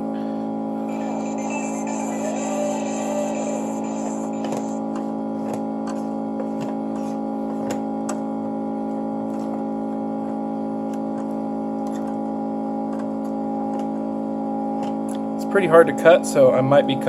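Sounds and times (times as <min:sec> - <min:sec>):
music sustained chord: 0:00.8 - 0:04.9.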